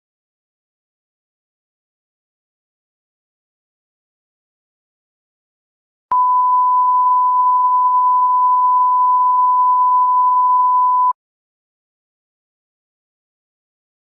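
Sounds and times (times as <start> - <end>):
steady sine test tone: 6.1 - 11.1.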